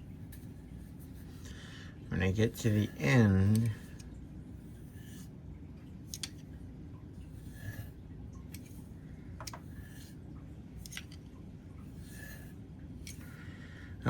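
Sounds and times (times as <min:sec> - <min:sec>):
knife stroking on strop: 0:02.5 - 0:05.4, 0:07.2 - 0:10.2, 0:10.8 - 0:11.2, 0:11.8 - 0:13.4.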